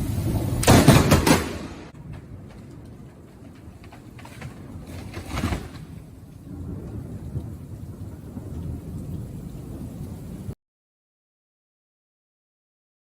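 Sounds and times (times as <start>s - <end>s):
steady rain: 0.0s - 1.1s, 1.8s - 10.6s
thunder crack: 0.0s - 10.6s
thunder rumbling: 0.0s - 10.6s.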